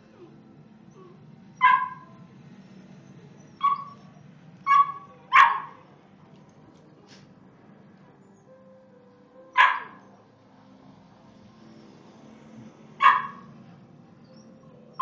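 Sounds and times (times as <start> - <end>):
dog barking: 1.6 - 2.2, 3.6 - 5.8, 9.5 - 10.1, 13.0 - 13.5.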